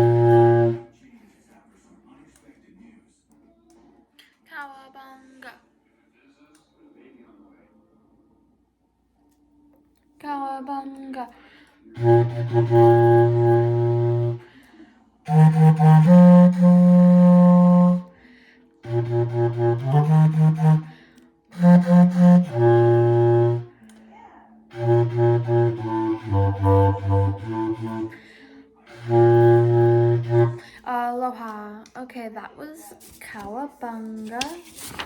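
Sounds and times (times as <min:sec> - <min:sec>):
low wind instrument playing: 0:00.0 - 0:00.9, 0:12.0 - 0:14.5, 0:15.3 - 0:18.1, 0:18.8 - 0:23.8, 0:24.7 - 0:30.6.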